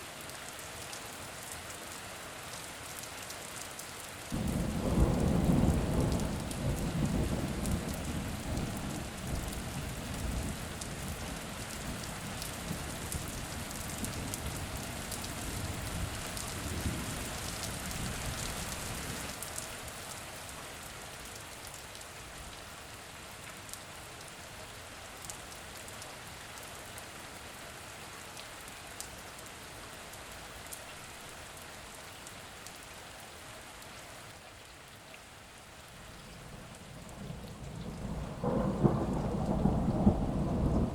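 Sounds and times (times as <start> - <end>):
steady rain on a surface: 0.0 - 40.9
rolling thunder rumble: 4.4 - 9.6, 36.4 - 40.9.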